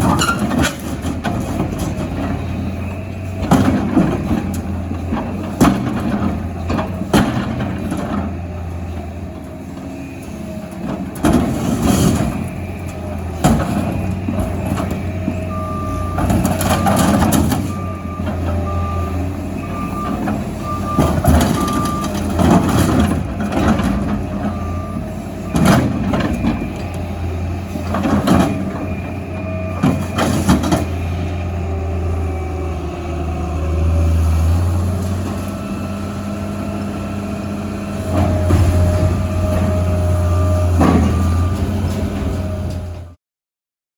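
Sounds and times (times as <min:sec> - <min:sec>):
heavy diesel engine running: 0:00.0 - 0:43.2
backup alarm beeping: 0:12.3 - 0:23.0, 0:24.0 - 0:32.7, 0:38.3 - 0:41.8
loud metal clanks and crashes: 0:38.0 - 0:42.5.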